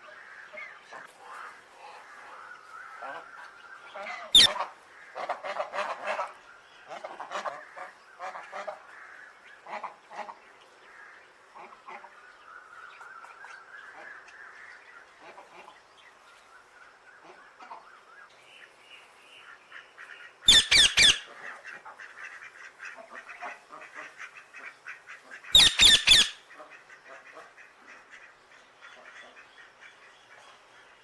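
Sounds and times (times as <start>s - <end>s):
parrots chirping softly: 1.8s - 4.7s, 19.0s - 22.5s, 23.2s - 27.5s
parrots squawking and chattering: 4.1s - 4.7s, 20.5s - 21.7s, 25.4s - 26.7s.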